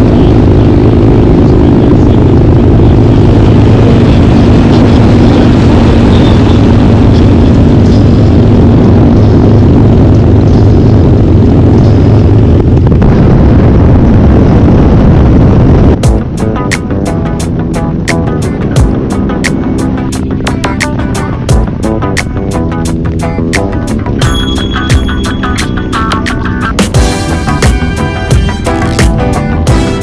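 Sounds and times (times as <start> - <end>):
motorcycle engine running loud: 0.0 - 30.0
deep kick drum hit: 16.0 - 16.4, 21.5 - 21.9, 26.8 - 30.0
music with steady drum beat: 16.0 - 30.0.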